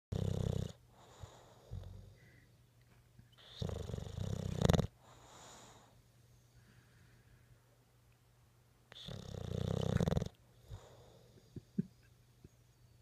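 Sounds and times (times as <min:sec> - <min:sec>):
dog snoring: 0:00.1 - 0:02.2, 0:03.4 - 0:06.0, 0:08.9 - 0:11.4
soft breath out: 0:05.0 - 0:07.7.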